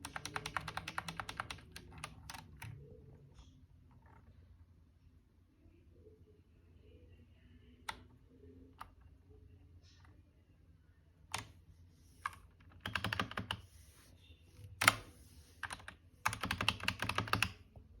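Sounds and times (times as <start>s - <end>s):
mechanical keyboard typing: 0.0s - 2.8s, 12.3s - 13.7s, 14.8s - 17.6s.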